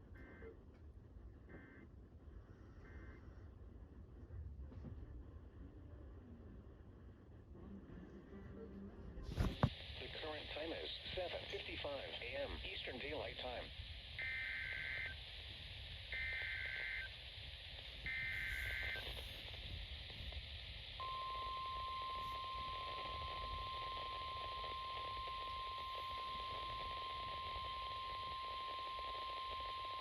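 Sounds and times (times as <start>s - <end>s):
radio static hiss: 9.3s - 30.0s
data bursts: 9.6s - 17.2s, 17.8s - 20.4s, 21.0s - 30.0s.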